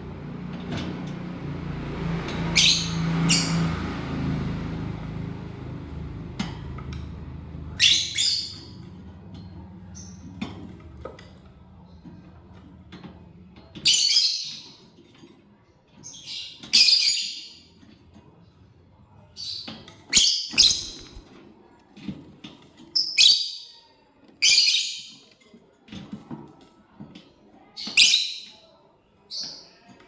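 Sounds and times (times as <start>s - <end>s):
lovebird shrill chirps: 20.2s - 21.2s.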